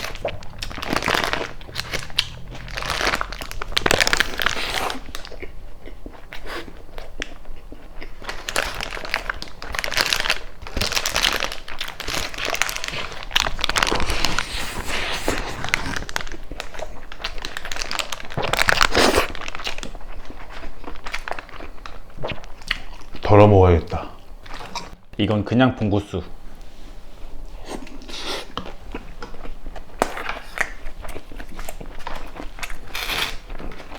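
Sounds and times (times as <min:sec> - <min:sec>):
food wrapper crinkling: 0:00.0 - 0:05.5, 0:08.1 - 0:23.2
crunchy biting: 0:00.0 - 0:20.4, 0:30.0 - 0:33.9.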